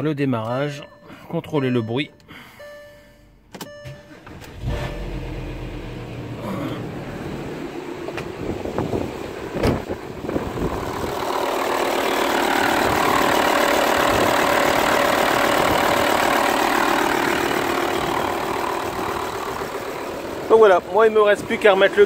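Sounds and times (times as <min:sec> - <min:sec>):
car engine starting and idling: 0:00.4 - 0:22.0
engine knocks: 0:08.0 - 0:22.0.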